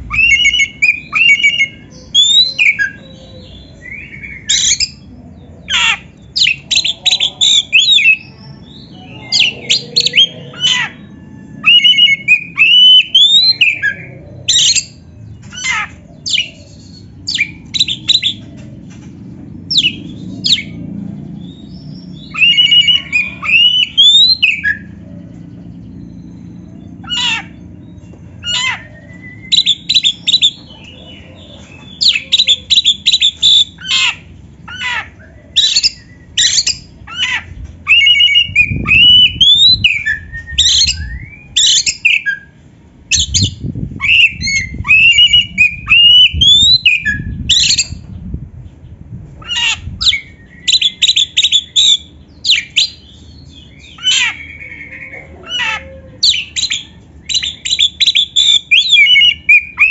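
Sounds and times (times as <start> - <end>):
bird whistling rising phrases: 0.0 - 5.1, 9.4 - 14.9, 22.1 - 25.0, 37.9 - 48.0, 49.5 - 59.9
bird singing harsh repeated notes: 0.0 - 31.2, 31.8 - 55.6, 56.2 - 59.9
low rumble: 13.5 - 51.0.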